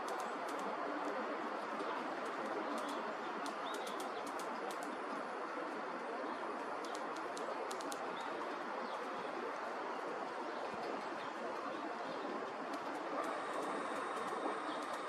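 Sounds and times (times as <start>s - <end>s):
woodpecker pecking stalks: 2.8s - 4.9s
rushing background noise: 12.4s - 15.0s.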